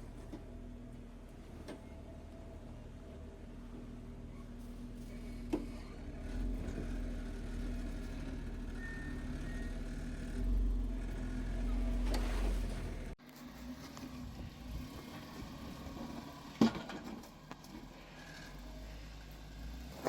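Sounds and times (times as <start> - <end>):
engine revving at low revs: 5.2 - 13.2.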